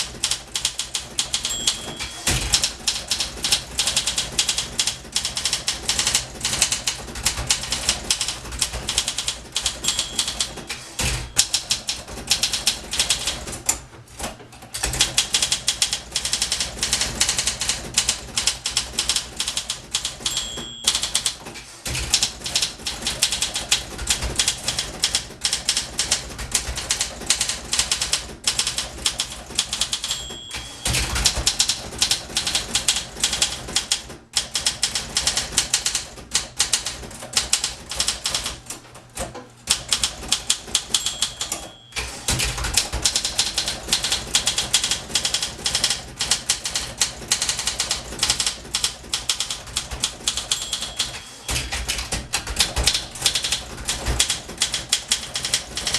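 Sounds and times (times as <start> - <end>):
typewriter carriage return: 0.0 - 55.9
typewriter typing: 0.0 - 55.9
typewriter margin bell ringing: 1.2 - 2.7, 9.6 - 11.9, 20.0 - 21.4, 29.7 - 31.8, 40.7 - 43.3, 49.3 - 54.8.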